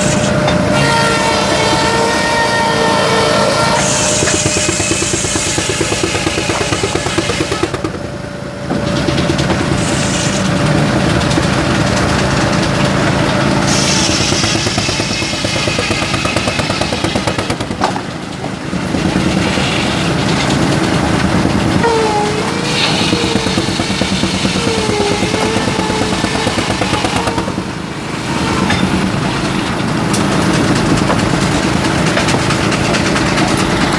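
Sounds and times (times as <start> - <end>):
large engine beating: 0.0 - 33.9
saw machinery noise: 0.0 - 33.9.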